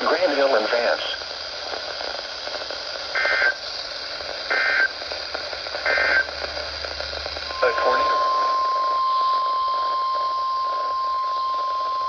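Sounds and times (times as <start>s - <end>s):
radio hiss: 0.0s - 12.0s
warbling digital data tones: 7.4s - 12.0s.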